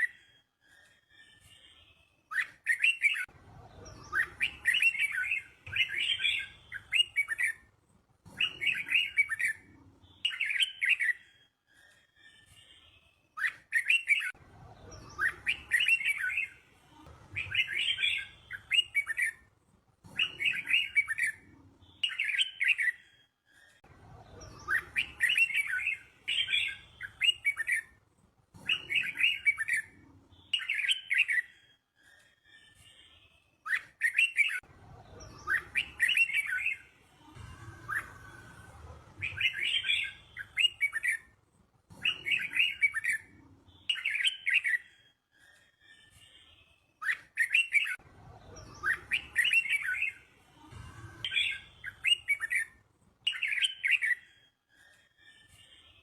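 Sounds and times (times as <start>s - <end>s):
bird singing warbling phrases: 2.3s - 7.7s, 8.3s - 11.3s, 13.4s - 16.6s, 17.3s - 19.4s, 20.1s - 23.1s, 24.2s - 27.9s, 28.6s - 31.6s, 33.6s - 38.4s, 39.2s - 41.3s, 41.9s - 45.0s, 47.0s - 52.7s, 53.3s - 54.3s.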